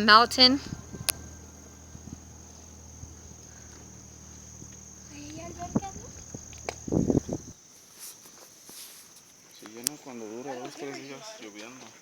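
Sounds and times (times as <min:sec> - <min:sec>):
insects chirring: 0:00.0 - 0:12.0
loud short rustle: 0:05.4 - 0:09.4.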